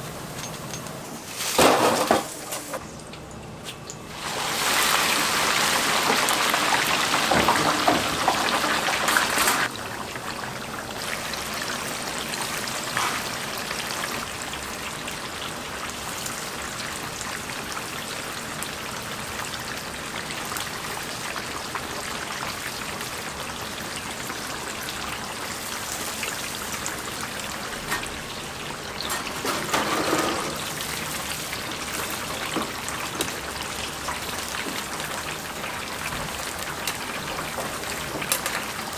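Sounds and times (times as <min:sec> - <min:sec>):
hot oil sizzling in fryer: 0:00.0 - 0:38.9.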